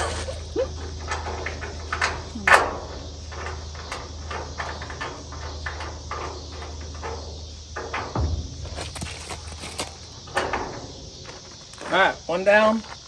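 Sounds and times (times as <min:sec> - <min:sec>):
low hum: 0:00.0 - 0:12.3
knocks and clanks in metal trailer: 0:00.0 - 0:13.0.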